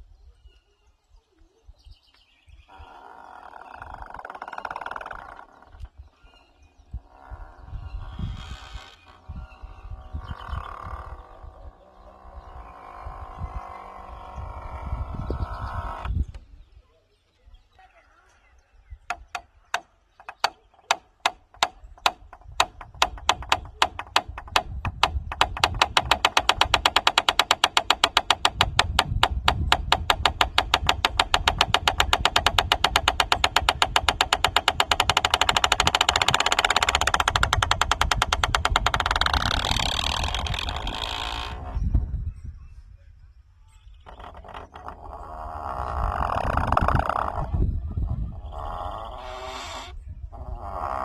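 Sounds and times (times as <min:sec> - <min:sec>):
wooden gate creaking: 0:02.7 - 0:16.6, 0:19.1 - 0:42.1, 0:43.9 - 0:51.0
low knocks: 0:19.1 - 0:41.3.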